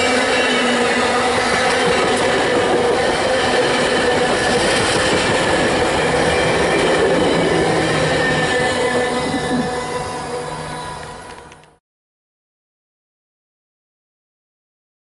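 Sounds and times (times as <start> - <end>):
train wheels rumbling on rails: 0.0 - 11.8.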